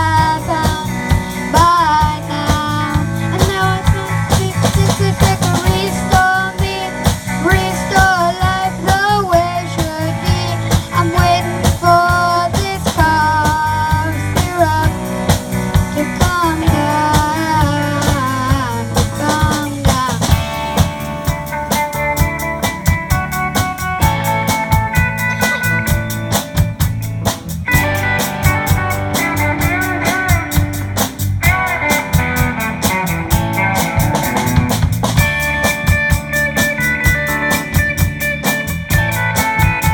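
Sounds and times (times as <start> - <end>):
rock band playing: 0.0 - 39.9
fast cymbal beat: 14.0 - 39.9.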